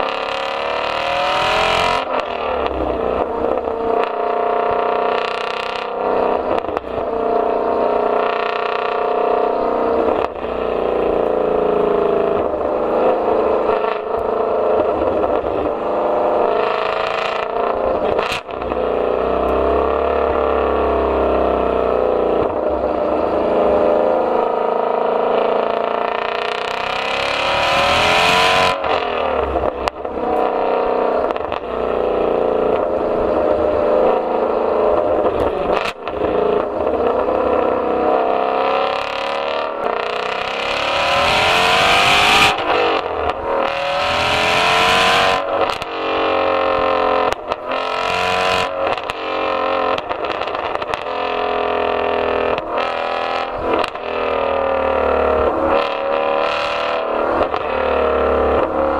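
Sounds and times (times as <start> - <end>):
car engine revving: 0.0 - 58.9
exhaust crackles: 0.0 - 58.9.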